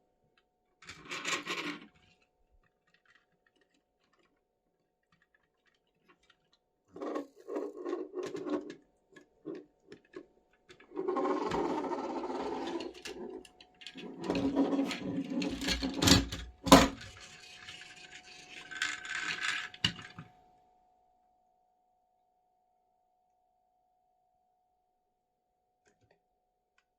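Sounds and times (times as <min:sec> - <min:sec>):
plastic scraping and rustling: 0:00.9 - 0:20.3.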